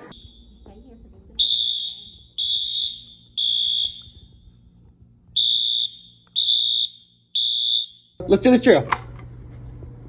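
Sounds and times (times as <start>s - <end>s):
fire alarm beeping: 0.0s - 0.8s, 1.4s - 4.6s, 5.3s - 8.2s.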